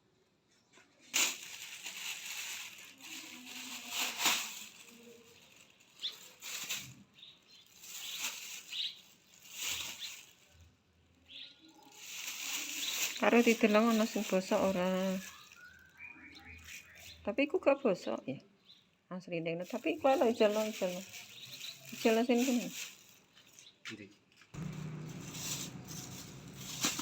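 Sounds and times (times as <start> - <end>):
rustling swishes: 24.6 - 27.0.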